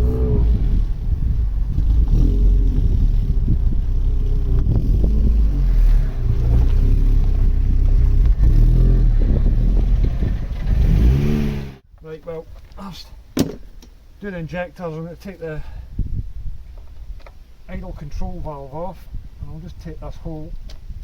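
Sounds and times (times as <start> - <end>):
car engine revving: 0.0 - 11.8.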